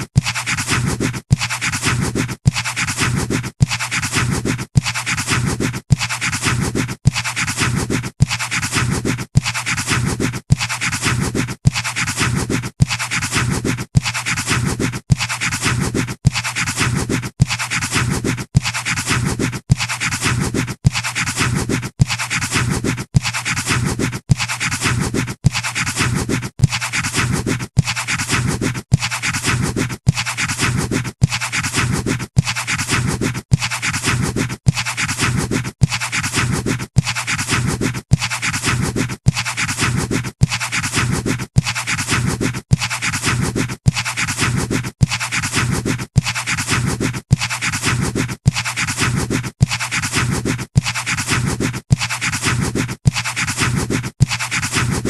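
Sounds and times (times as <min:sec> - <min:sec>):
pencil scratching on paper: 0:00.0 - 0:55.0.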